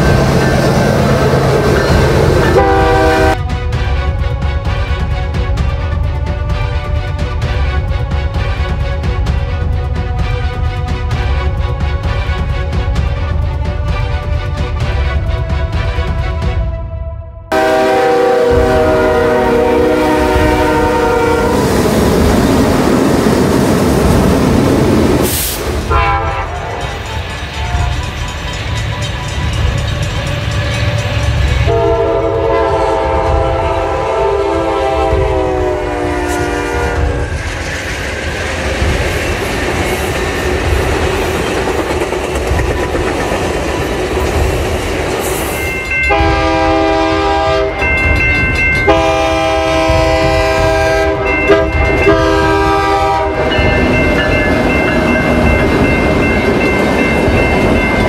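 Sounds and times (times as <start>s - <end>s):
train rumble and wheel clatter: 0.0s - 58.0s
train horn blasts: 2.4s - 3.5s, 16.4s - 21.8s, 25.9s - 28.0s, 31.6s - 37.2s, 46.1s - 48.1s, 48.8s - 54.3s.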